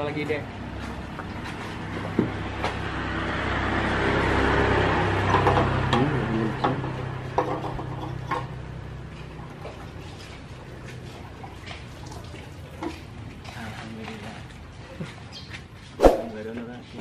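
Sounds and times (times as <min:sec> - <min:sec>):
vehicle engine humming: 0:00.3 - 0:11.9.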